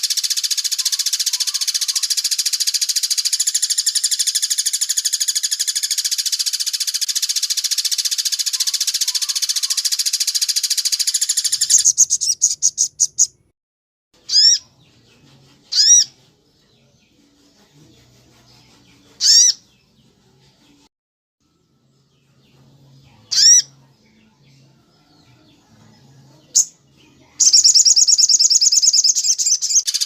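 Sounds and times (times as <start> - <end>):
short shrill bird calls: 0.0 - 13.3, 14.3 - 14.6, 15.7 - 16.1, 19.2 - 19.6, 23.3 - 23.7, 27.4 - 30.0
songbird trilling: 0.0 - 13.3, 14.3 - 14.6, 19.2 - 19.6, 23.3 - 23.7, 27.4 - 30.0.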